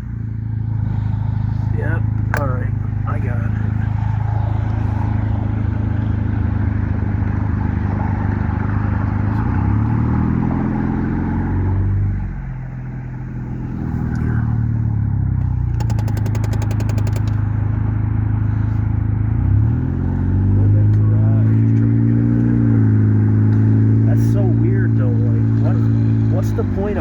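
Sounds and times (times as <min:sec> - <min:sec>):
car engine and road noise: 0:00.0 - 0:27.0
quick clicks: 0:15.7 - 0:17.4.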